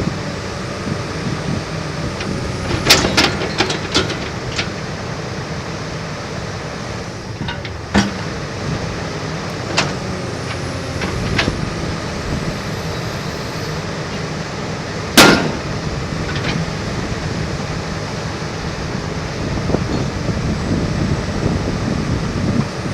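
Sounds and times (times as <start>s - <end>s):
excavator diesel engine running: 0.0s - 22.9s
sharp metal knocks: 15.2s - 15.7s.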